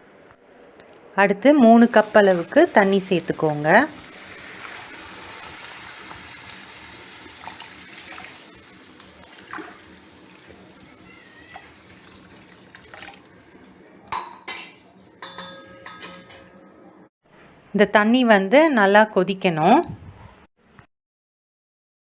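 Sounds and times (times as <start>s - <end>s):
water pouring into saucepan: 1.8s - 14.1s.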